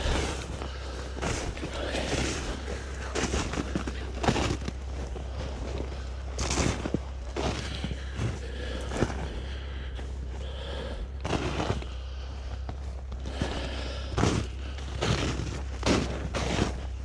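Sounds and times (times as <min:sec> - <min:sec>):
footsteps crunching in snow: 0:00.0 - 0:17.0
low steady hum: 0:00.0 - 0:17.0.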